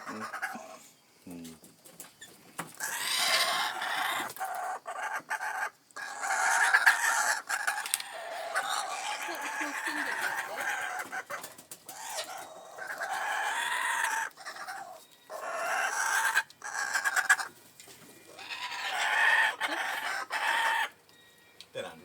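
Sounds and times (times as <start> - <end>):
kookaburras laughing calls: 2.8 - 17.5, 18.3 - 20.9.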